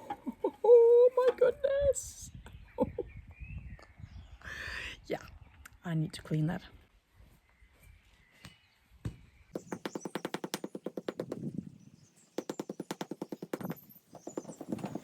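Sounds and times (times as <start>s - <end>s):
knock: 9.6s - 11.4s, 12.4s - 13.8s
rapid sharp clicks: 9.6s - 11.5s, 12.4s - 15.0s.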